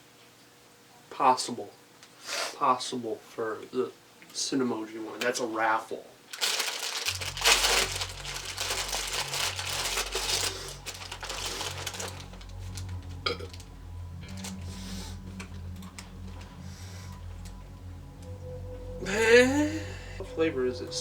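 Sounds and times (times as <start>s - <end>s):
quiet background music: 4.5s - 21.0s
cereal box and plastic bag crinkling: 6.3s - 17.7s.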